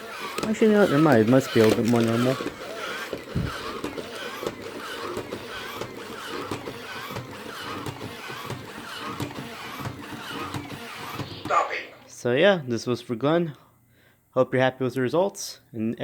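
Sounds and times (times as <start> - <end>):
robot gear motors whirring: 0.0 - 11.5
robot feet clicking: 0.8 - 6.0.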